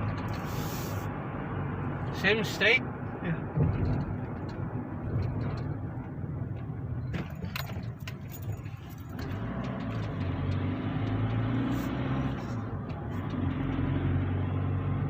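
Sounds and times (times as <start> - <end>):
car engine and road hum: 0.0 - 15.0
light clicks and rattles: 3.6 - 11.4.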